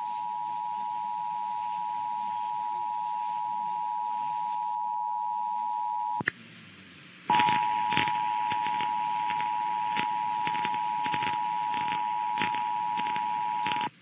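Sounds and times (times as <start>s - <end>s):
faint hiss: 6.2s - 14.0s
radio crackling clicks: 7.3s - 14.0s.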